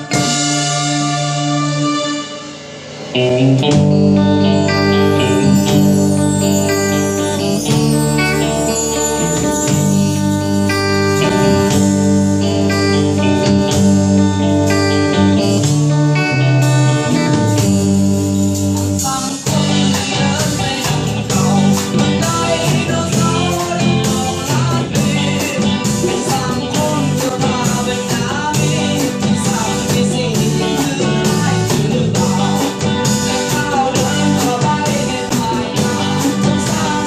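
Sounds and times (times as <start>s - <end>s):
rock band playing: 0.0s - 37.0s
person singing: 3.2s - 37.0s.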